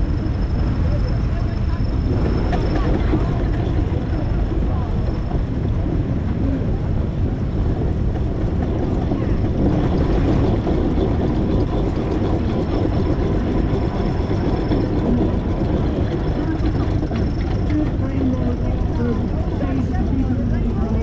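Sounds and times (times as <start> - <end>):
faint voices: 0.0 - 21.0
steam traction engine rumbling: 0.0 - 21.0.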